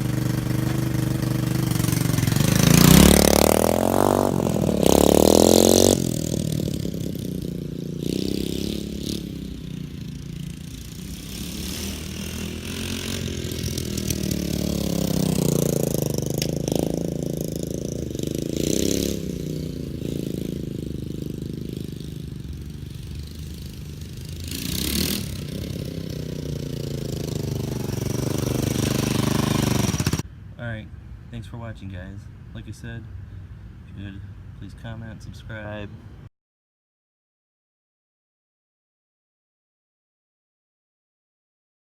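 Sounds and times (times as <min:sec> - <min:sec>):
minibike engine revving: 0:00.0 - 0:30.2.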